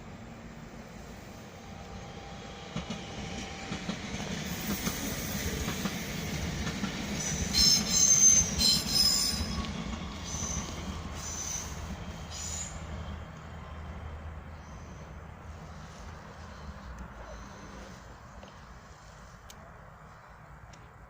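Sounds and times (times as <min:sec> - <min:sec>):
train wheels clicking over rail joints: 0:02.6 - 0:13.4
high-pitched wheel squeal: 0:07.2 - 0:12.8.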